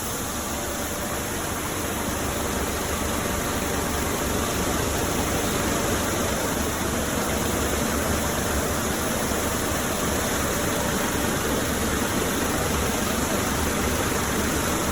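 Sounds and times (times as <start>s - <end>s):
low machine hum: 0.0s - 14.9s
steady rushing machine noise: 0.0s - 14.9s.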